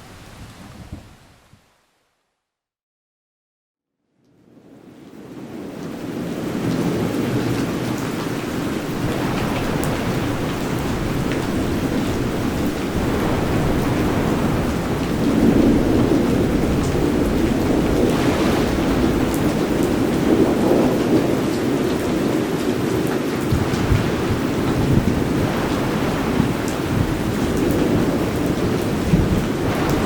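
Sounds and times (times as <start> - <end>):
steady rain: 0.0 - 2.0, 4.2 - 30.0
rolling thunder: 5.6 - 22.3, 23.5 - 30.0.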